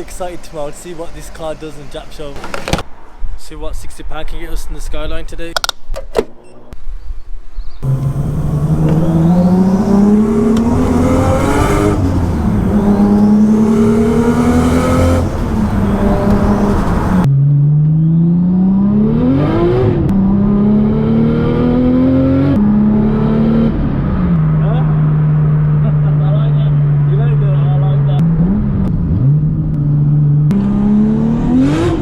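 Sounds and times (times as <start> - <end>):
car engine accelerating hard: 7.8 - 32.0.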